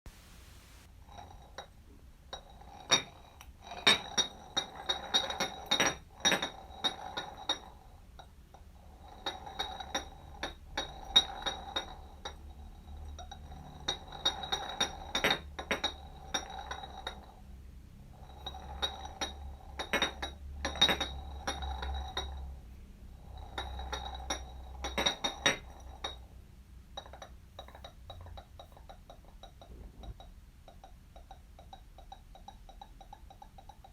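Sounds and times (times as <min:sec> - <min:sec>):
jar rolling across floor: 0:01.0 - 0:07.8, 0:08.8 - 0:17.4, 0:18.1 - 0:22.6, 0:23.2 - 0:26.3, 0:27.0 - 0:30.3.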